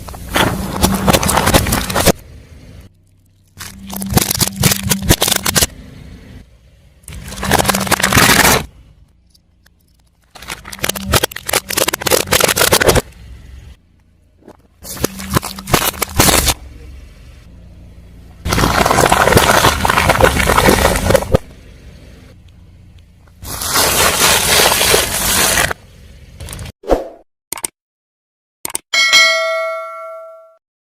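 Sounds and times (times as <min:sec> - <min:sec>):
objects crunching under car tyre: 0:00.0 - 0:02.2, 0:03.1 - 0:05.8, 0:07.1 - 0:08.8, 0:10.1 - 0:13.2, 0:14.4 - 0:16.6, 0:18.4 - 0:21.6, 0:23.3 - 0:25.8
low steady hum: 0:00.0 - 0:23.4.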